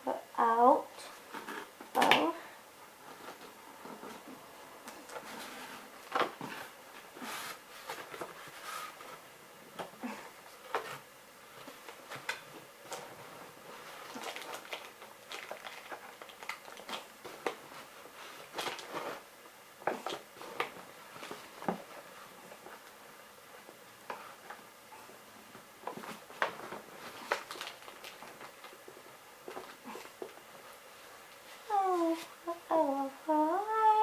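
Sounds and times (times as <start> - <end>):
packaging rustling and clicking: 14.0 - 19.2, 25.8 - 30.4.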